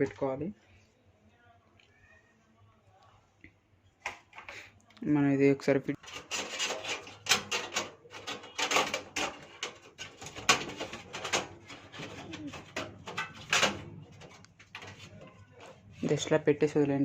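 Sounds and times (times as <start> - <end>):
thin metal clicking and scraping: 6.0 - 15.8.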